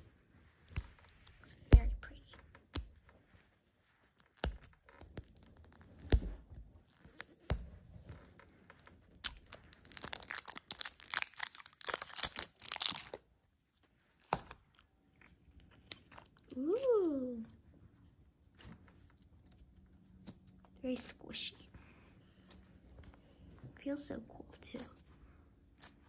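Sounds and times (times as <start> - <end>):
plastic crackling and tearing: 3.8 - 13.3
plastic packaging clicks: 8.5 - 13.2.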